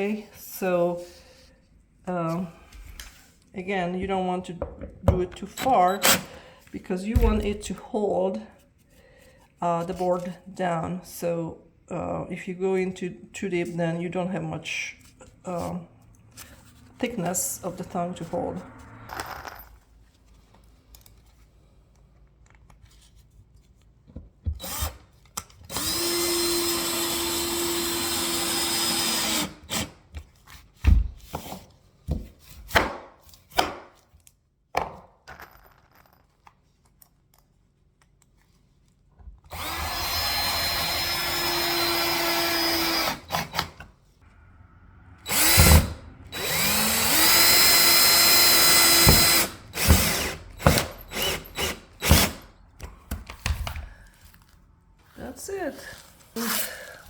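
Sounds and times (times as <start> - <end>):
power drill drilling into wood: 25.7 - 29.9, 39.5 - 43.7, 45.3 - 52.5.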